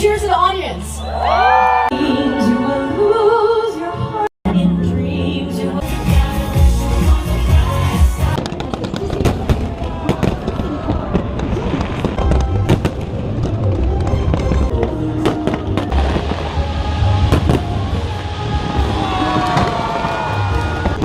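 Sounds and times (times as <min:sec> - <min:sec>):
music: 0:01.9 - 0:08.6, 0:11.8 - 0:21.0
fireworks bangs and crackles: 0:08.2 - 0:21.0.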